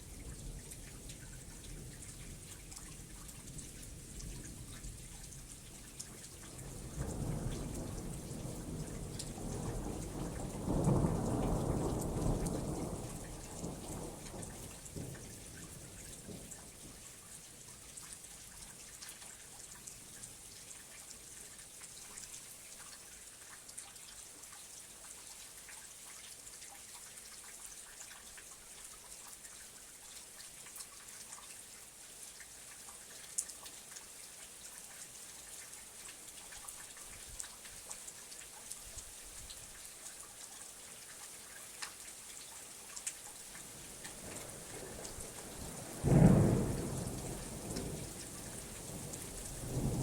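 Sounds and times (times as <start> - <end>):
rain drops ticking on a surface: 0.0 - 50.0.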